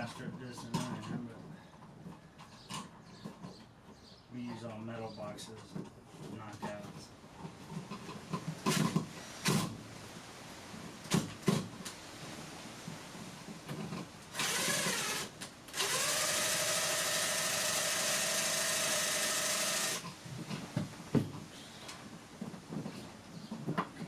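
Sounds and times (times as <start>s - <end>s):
power drill running: 14.3s - 20.1s.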